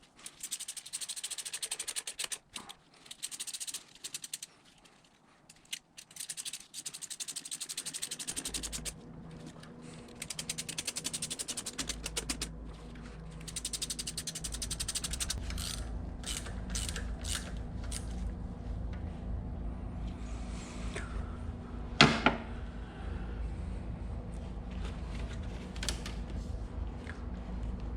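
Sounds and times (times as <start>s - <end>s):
hand ratchet clicking: 0.2s - 2.4s, 3.0s - 4.5s, 5.5s - 8.9s, 10.2s - 12.5s, 13.4s - 18.2s
low steady hum: 2.4s - 27.9s.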